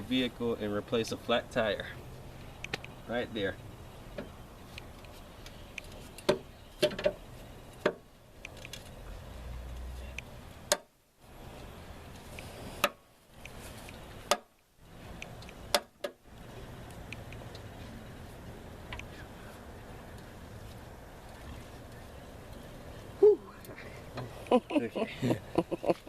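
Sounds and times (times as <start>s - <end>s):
sharp clicks and knocks: 4.1s - 7.2s, 10.2s - 10.9s, 12.4s - 16.2s.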